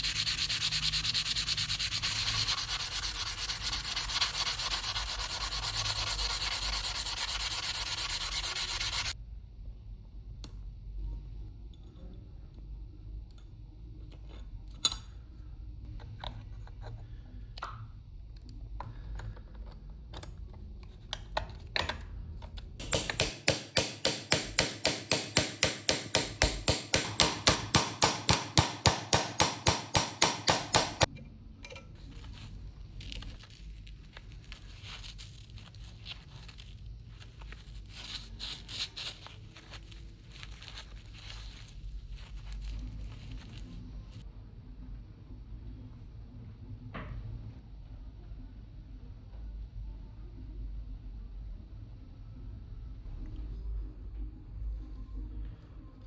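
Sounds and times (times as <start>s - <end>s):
hand sanding with abrasive paper: 0.0s - 9.2s.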